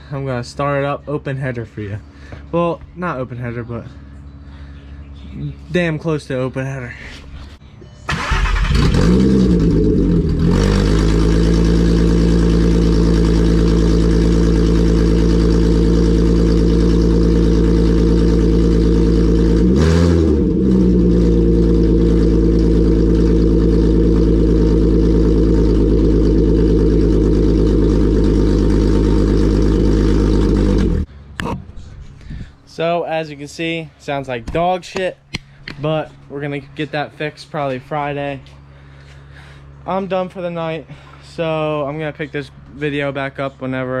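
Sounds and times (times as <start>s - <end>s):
car engine starting and revving: 8.1s - 31.1s.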